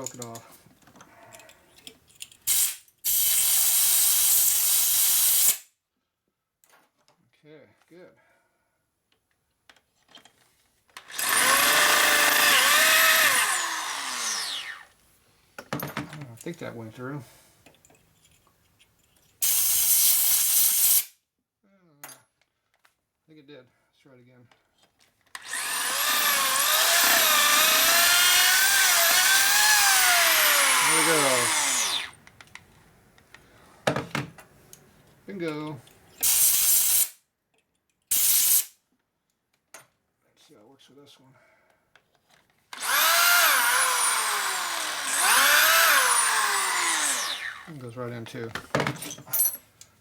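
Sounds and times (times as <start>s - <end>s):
power drill boring through steel: 11.0s - 14.9s, 25.4s - 32.2s, 42.8s - 47.7s.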